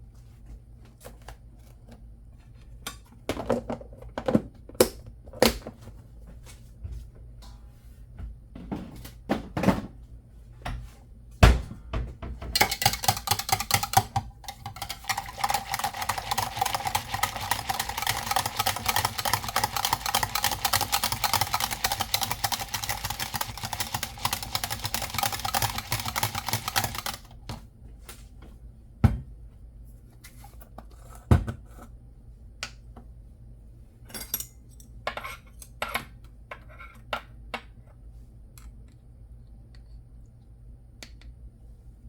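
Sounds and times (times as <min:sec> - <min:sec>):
utensil clattering against dish: 0:12.6 - 0:27.3.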